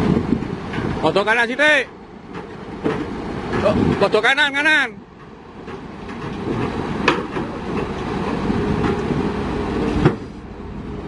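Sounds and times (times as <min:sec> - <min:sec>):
diesel construction machinery running: 0:00.0 - 0:11.0
sharp metallic knocks: 0:05.2 - 0:07.9.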